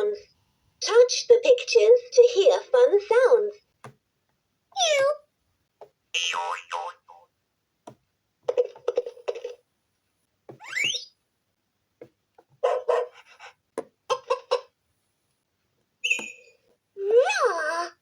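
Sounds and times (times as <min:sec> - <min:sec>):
high-pitched chirp: 0:10.6 - 0:11.2, 0:16.0 - 0:16.6
dog barking: 0:12.6 - 0:13.5.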